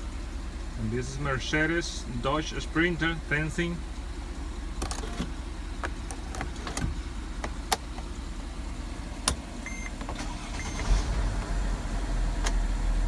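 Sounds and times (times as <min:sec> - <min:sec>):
van engine idling: 0:00.0 - 0:13.0
dashboard beeps: 0:09.6 - 0:09.9.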